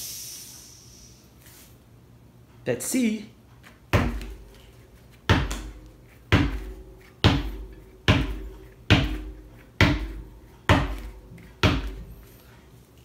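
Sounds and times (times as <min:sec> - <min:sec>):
bike wheel bouncing hollow thuds: 0:03.9 - 0:12.3.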